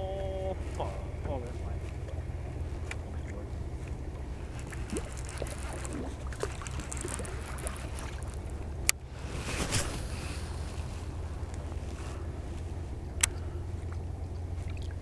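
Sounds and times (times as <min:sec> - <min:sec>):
boat engine hum: 0:00.0 - 0:15.0
short rushing sound: 0:09.2 - 0:11.9.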